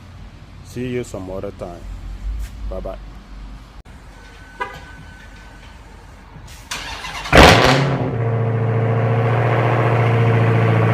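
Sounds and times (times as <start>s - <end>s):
car engine cranking and starting: 6.6s - 10.9s.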